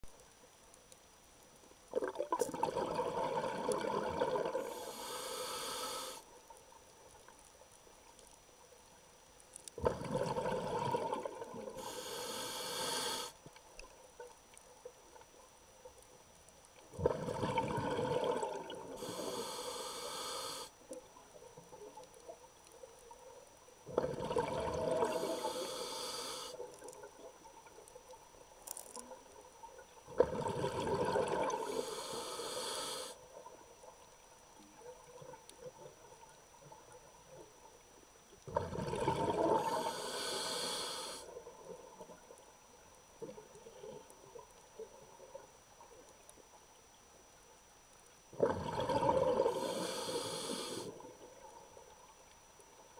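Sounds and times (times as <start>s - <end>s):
diver breathing through regulator: 4.4s - 6.2s, 11.7s - 13.4s, 18.9s - 20.8s, 24.8s - 26.6s, 31.2s - 33.2s, 39.5s - 41.3s, 49.3s - 51.0s.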